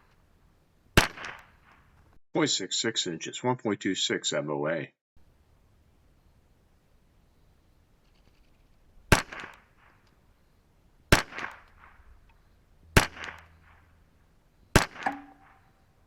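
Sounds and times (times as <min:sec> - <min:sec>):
rifle shots: 0:01.0 - 0:01.9, 0:09.1 - 0:10.0, 0:11.1 - 0:12.1, 0:13.0 - 0:14.0, 0:14.7 - 0:15.8
softer echoing report: 0:14.9 - 0:16.0.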